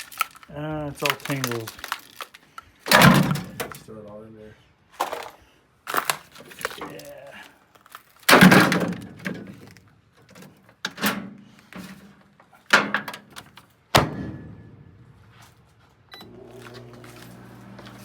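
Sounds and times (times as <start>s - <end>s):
objects clattering in microwave: 2.9s - 3.8s
microwave humming: 16.1s - 18.0s.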